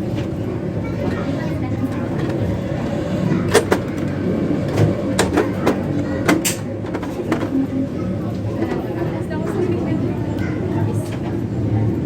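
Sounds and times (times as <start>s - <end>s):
sharp clicks and knocks: 3.5s - 7.6s.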